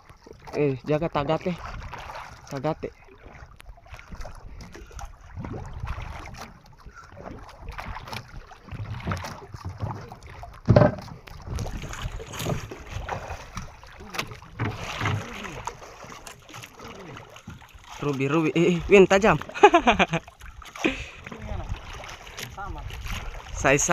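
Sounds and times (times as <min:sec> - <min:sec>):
water sloshing against boat hull: 0:00.0 - 0:23.9
wind on microphone: 0:03.8 - 0:09.6, 0:11.3 - 0:13.7, 0:21.0 - 0:23.9.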